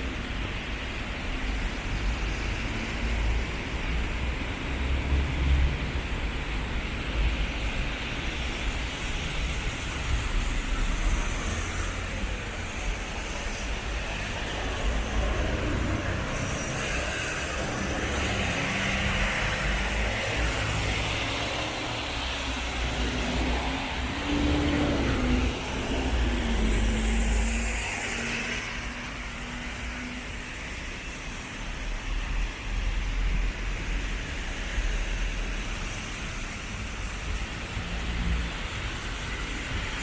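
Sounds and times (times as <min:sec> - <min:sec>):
traffic engines rumbling: 0:00.0 - 0:40.0
tyres hissing on wet road: 0:00.0 - 0:40.0
vehicle engine hum: 0:00.1 - 0:30.9.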